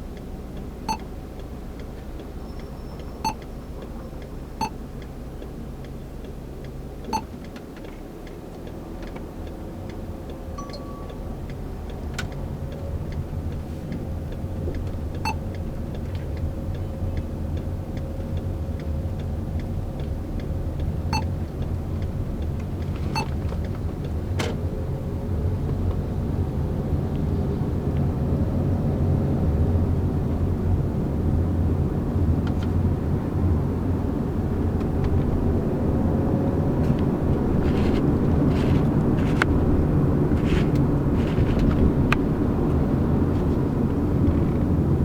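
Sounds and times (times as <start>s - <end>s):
car road and engine rumble: 0.0s - 45.0s
brief beep: 10.6s - 11.4s.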